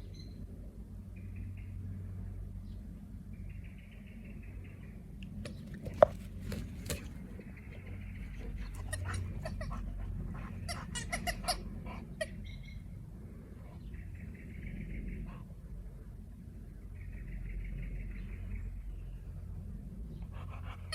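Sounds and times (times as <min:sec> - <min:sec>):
squeaky ball squeaking: 0:10.5 - 0:12.5.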